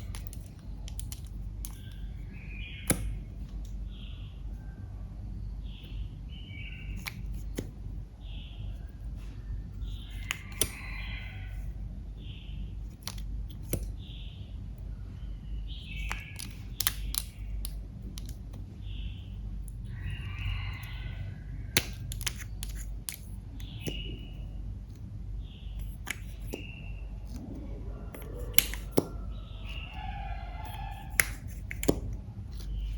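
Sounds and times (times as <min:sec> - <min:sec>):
slime clicking and popping: 0:16.0 - 0:18.4, 0:21.7 - 0:24.1, 0:28.1 - 0:29.1, 0:31.1 - 0:32.2
slime squelching: 0:25.7 - 0:32.9.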